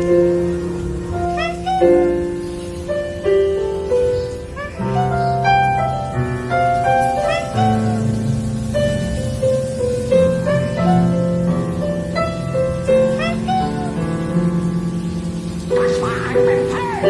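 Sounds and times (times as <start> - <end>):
slow sad piano music: 0.0 - 17.0.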